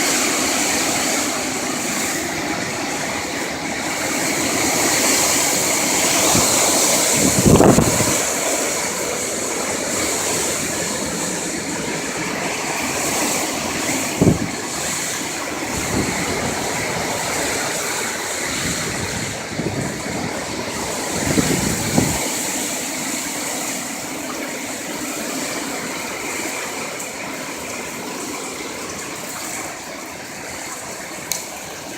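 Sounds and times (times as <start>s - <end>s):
gusts buffeting microphone: 0.0s - 23.6s
wind and rain rushing: 0.0s - 31.9s.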